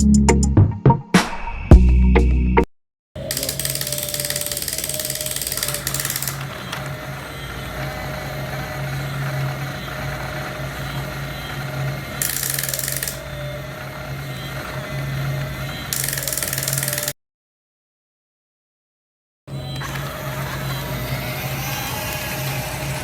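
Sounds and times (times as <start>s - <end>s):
electric motors humming: 3.2s - 17.1s, 19.5s - 23.0s
high-pitched whir: 3.2s - 17.1s, 19.5s - 23.0s.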